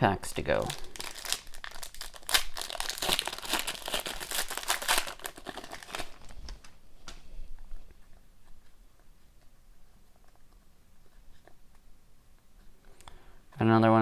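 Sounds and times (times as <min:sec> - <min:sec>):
card pack wrapper tearing: 0:00.3 - 0:06.8.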